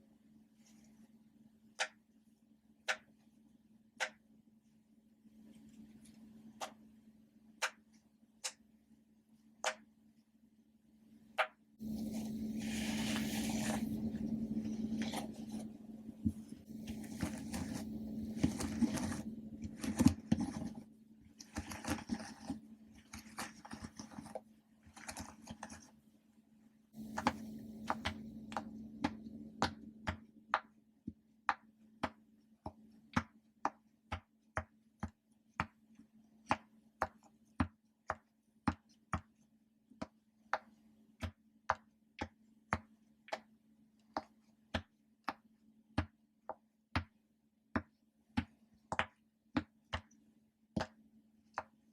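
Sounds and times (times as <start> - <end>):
toys rustling and scraping: 11.8 - 20.8.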